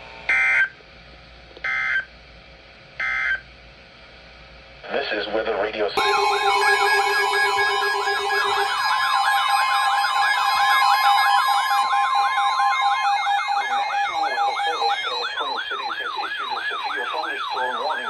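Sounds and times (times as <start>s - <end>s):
siren-like yelp: 6.0s - 18.0s
steady alarm tones: 6.0s - 18.0s.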